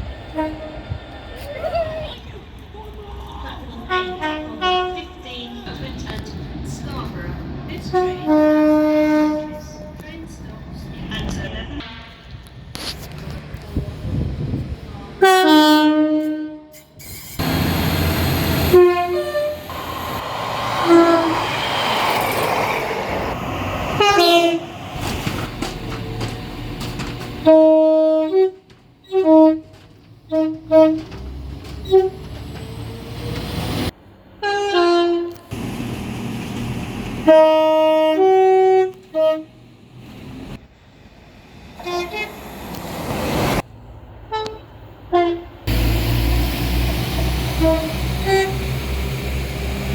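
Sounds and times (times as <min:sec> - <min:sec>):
train running: 0:00.0 - 0:49.9
train horn blasts: 0:00.3 - 0:00.9, 0:03.9 - 0:05.1, 0:07.8 - 0:10.0, 0:15.2 - 0:16.8, 0:17.4 - 0:21.8, 0:23.9 - 0:25.0, 0:27.4 - 0:31.1, 0:34.4 - 0:35.6, 0:37.2 - 0:39.6, 0:41.8 - 0:42.3, 0:44.3 - 0:45.9, 0:47.4 - 0:48.8.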